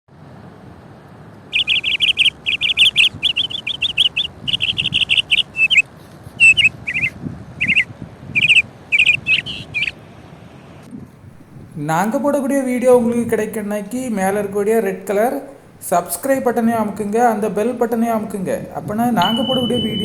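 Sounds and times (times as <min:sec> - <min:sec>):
bird chirping: 0:01.5 - 0:05.8, 0:08.4 - 0:09.9, 0:11.4 - 0:20.0
faint background hiss: 0:11.1 - 0:20.0.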